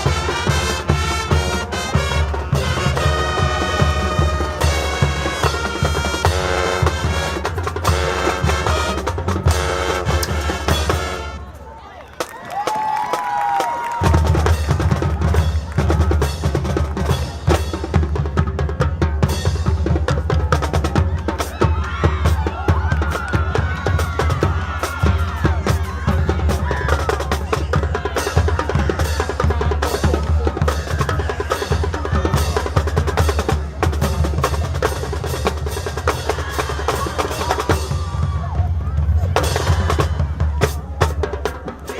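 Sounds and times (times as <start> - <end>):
rapid snare drum hits and rolls: 0.0 - 11.3, 12.2 - 41.9
faint band instruments: 0.0 - 41.9
heavy bass drums: 14.0 - 41.9.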